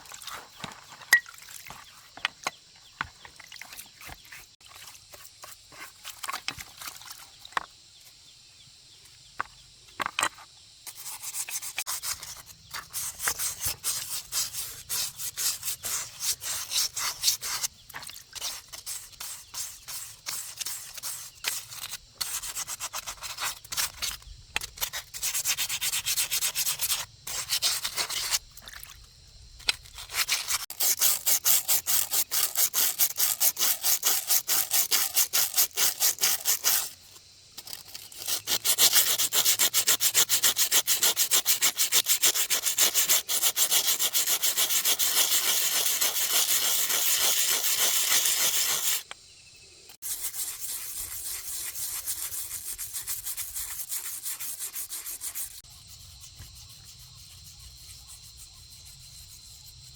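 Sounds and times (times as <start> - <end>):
hand sanding strokes: 10.9 - 17.7, 18.4 - 24.0, 24.8 - 28.4, 29.8 - 49.1, 50.0 - 59.9.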